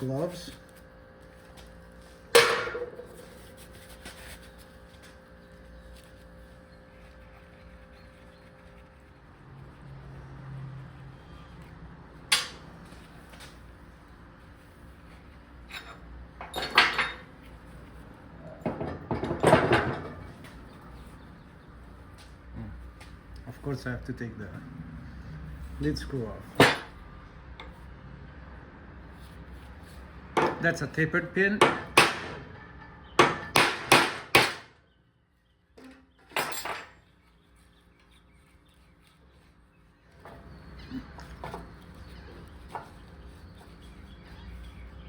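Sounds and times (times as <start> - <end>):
steel parts clanking and scraping: 32.2 - 33.6, 35.8 - 37.0.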